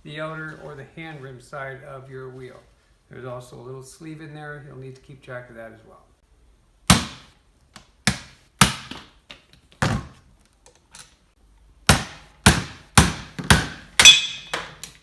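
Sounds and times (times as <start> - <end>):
hammer striking metal hub: 14.0 - 14.7.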